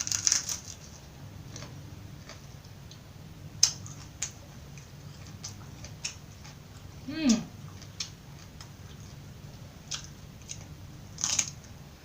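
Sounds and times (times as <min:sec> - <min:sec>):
crisp chewing crunches: 0:00.0 - 0:02.5, 0:09.8 - 0:11.7.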